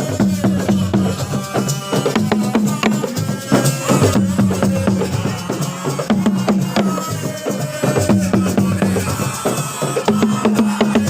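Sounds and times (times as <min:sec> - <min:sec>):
fast drumming: 0:00.0 - 0:11.0.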